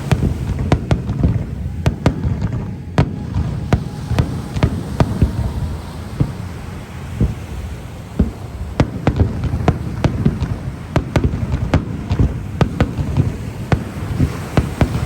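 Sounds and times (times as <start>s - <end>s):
low rumble: 0.0s - 11.6s
fireworks bangs: 0.0s - 15.0s.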